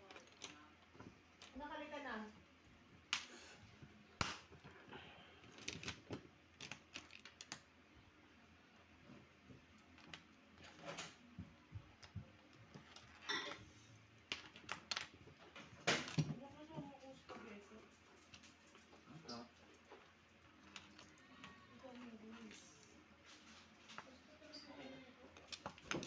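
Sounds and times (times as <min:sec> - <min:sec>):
small objects clicking and tapping: 0:00.0 - 0:01.7, 0:05.4 - 0:07.8, 0:09.4 - 0:26.0.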